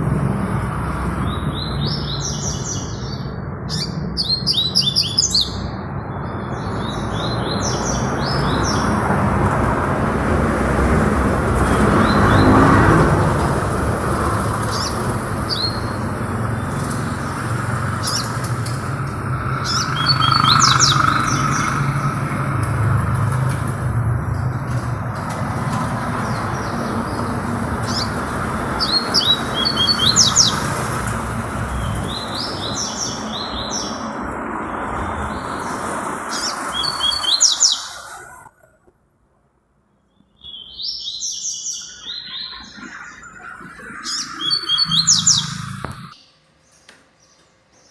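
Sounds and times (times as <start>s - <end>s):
songbird chirping: 1.2s - 9.0s, 19.6s - 22.4s, 36.4s - 38.7s, 39.9s - 47.9s.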